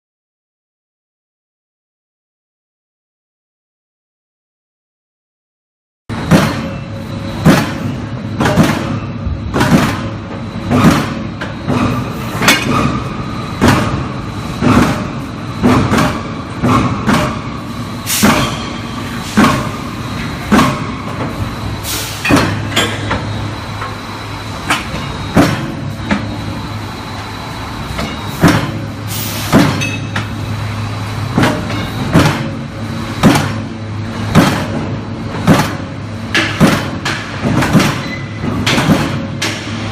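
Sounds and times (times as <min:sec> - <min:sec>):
sharp machine knocks: 0:06.1 - 0:21.4, 0:22.2 - 0:23.3, 0:24.7 - 0:26.3, 0:28.0 - 0:30.2, 0:31.3 - 0:33.7, 0:34.3 - 0:39.9.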